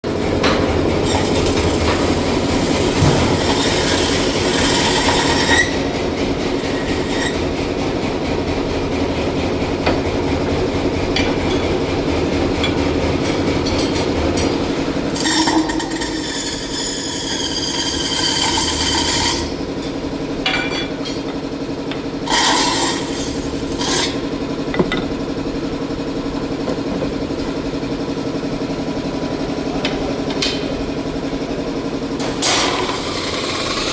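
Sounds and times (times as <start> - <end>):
metal lathe humming: 0.1 - 33.9
high ringing cutting screech: 3.4 - 5.8, 15.2 - 19.6.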